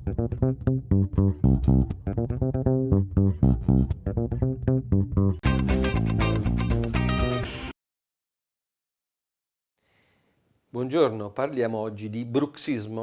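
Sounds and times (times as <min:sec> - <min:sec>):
bright guitar part: 0:00.0 - 0:07.7
plucked bass guitar: 0:00.0 - 0:07.7.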